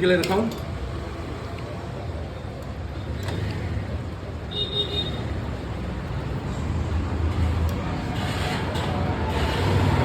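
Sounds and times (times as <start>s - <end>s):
low rumble of road traffic: 0.0s - 10.0s.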